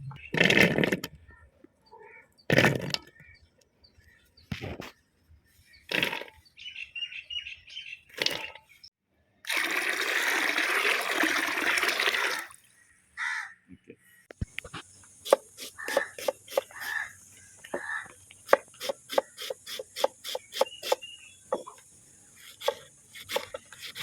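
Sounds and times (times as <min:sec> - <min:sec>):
small birds twittering: 0:00.0 - 0:09.0, 0:14.0 - 0:24.0
rush of pouring water: 0:09.5 - 0:12.6.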